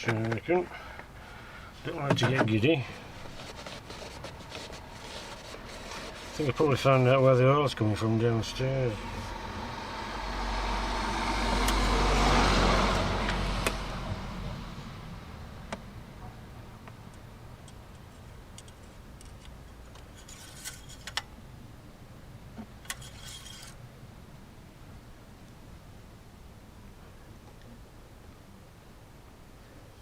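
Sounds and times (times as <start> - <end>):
road vehicle passing: 2.7 - 16.8.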